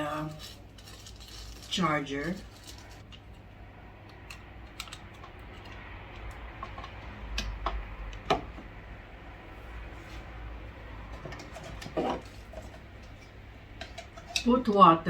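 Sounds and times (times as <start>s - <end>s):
plastic parts clicking: 4.1s - 8.4s.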